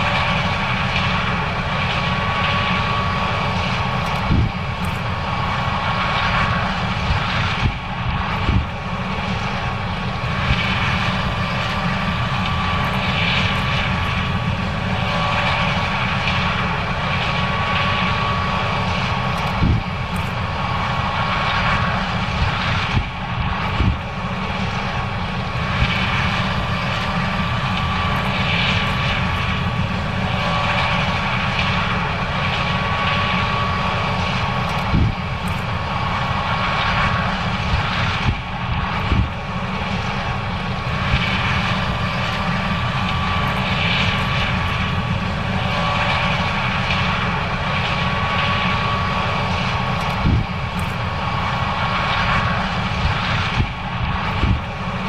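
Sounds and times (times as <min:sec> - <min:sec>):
combine harvester engine drone: 0:00.0 - 0:55.0
thin steady whine: 0:00.0 - 0:55.0.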